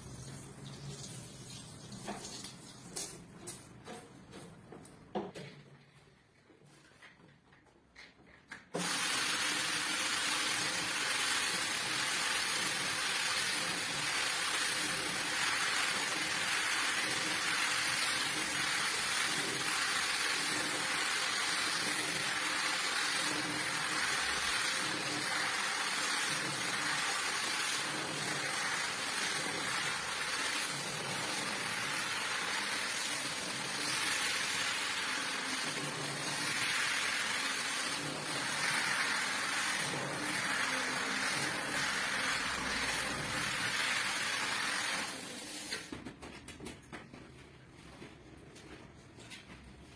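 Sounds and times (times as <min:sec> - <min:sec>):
water spraying on rug: 0:08.8 - 0:45.9.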